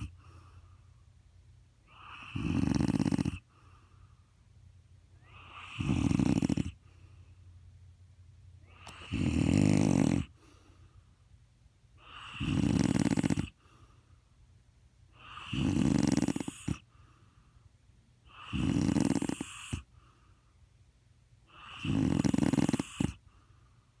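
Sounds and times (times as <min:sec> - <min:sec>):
man snoring loudly: 0:02.0 - 0:03.4, 0:05.5 - 0:06.8, 0:08.9 - 0:10.3, 0:12.2 - 0:13.5, 0:15.3 - 0:16.8, 0:18.4 - 0:19.8, 0:21.6 - 0:23.2.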